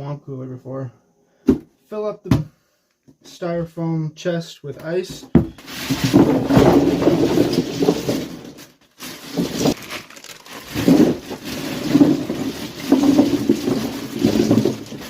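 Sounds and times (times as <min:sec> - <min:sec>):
ice poured into a cooler: 0:05.6 - 0:15.0.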